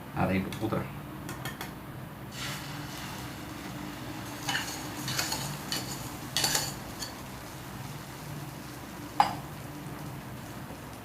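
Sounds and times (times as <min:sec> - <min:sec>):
egg mixture sizzling on pan: 0:02.3 - 0:11.0.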